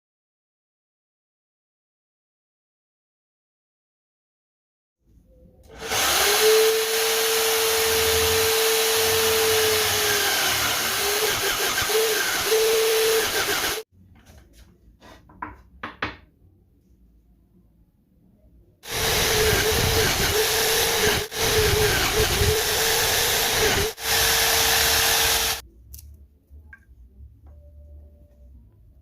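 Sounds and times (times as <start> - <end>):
drill motor sanding wood: 5.8 - 13.8, 18.8 - 25.6.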